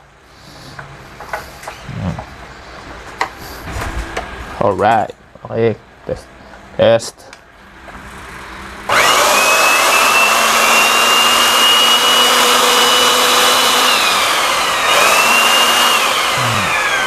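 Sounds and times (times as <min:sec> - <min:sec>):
saw motor high whine: 0:08.9 - 0:17.0.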